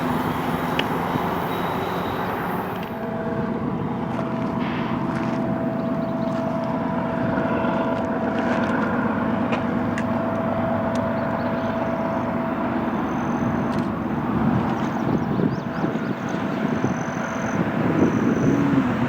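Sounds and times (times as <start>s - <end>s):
high ringing tone: 0.0s - 3.1s
train wheels rumbling on rail: 0.0s - 19.0s.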